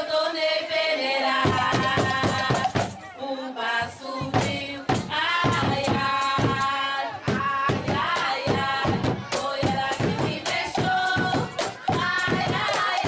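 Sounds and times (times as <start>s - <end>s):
voices singing together: 0.0s - 13.0s
hand percussion strokes: 1.4s - 3.0s.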